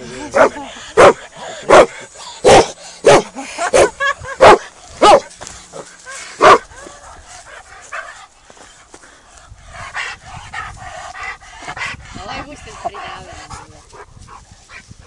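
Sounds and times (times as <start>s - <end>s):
dog barking: 0.4s - 5.3s, 6.4s - 6.6s.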